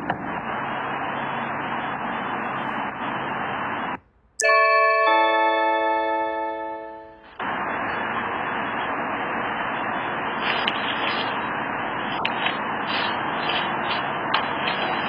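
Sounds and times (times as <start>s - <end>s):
electronic doorbell chime: 4.4s - 7.4s.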